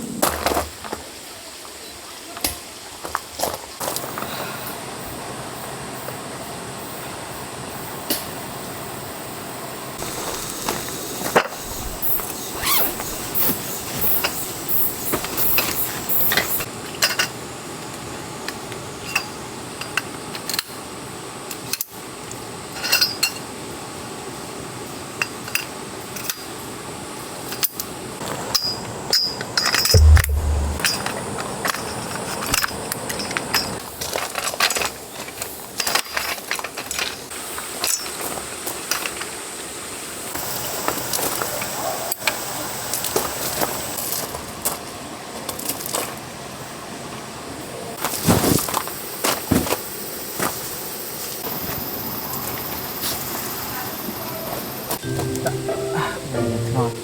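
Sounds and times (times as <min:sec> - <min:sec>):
heavy thump: 0:30.0 - 0:31.0
thin high-pitched tone: 0:30.0 - 0:31.0, 0:55.0 - 0:57.0.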